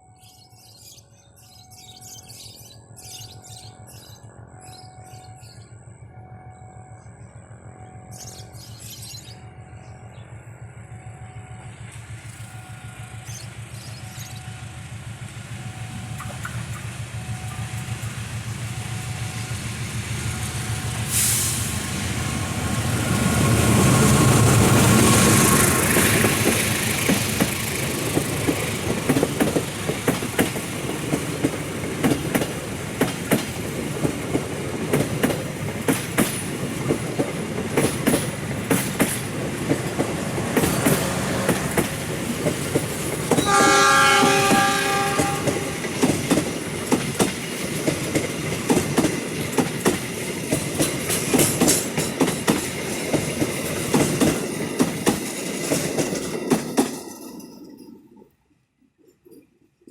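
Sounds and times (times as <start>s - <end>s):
train wheels clicking over rails: 11.9s - 57.5s
locomotive horn blast: 43.3s - 46.0s.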